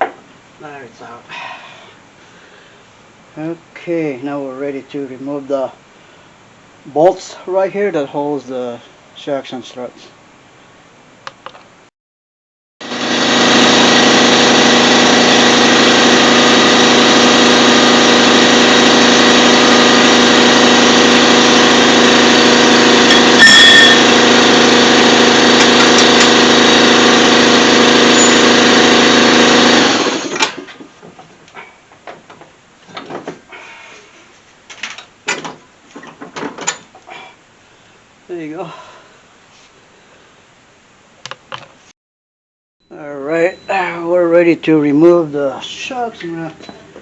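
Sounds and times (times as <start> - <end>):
impact wrench hammering: 22.5 - 26.6
tool clatter: 22.9 - 24.5, 25.2 - 26.5.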